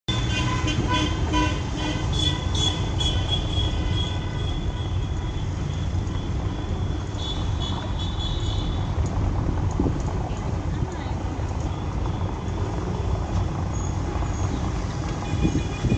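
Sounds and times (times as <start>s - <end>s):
car horns honking: 0.1s - 9.2s, 15.0s - 15.9s
traffic rumble: 0.1s - 15.9s.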